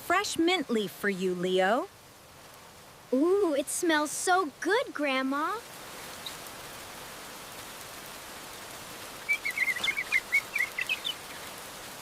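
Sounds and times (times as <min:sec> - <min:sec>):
steady rain: 0:00.0 - 0:12.0
bird chirping: 0:06.1 - 0:06.4, 0:09.2 - 0:11.6.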